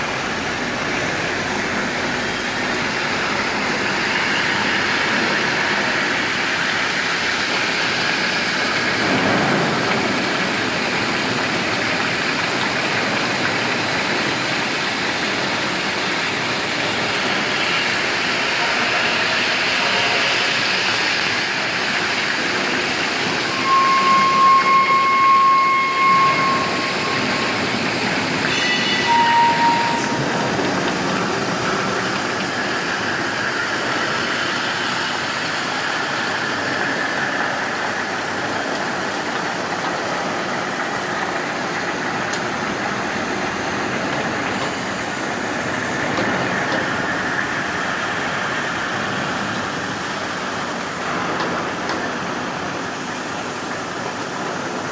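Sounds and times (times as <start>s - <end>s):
high tones: 23.0s - 31.8s.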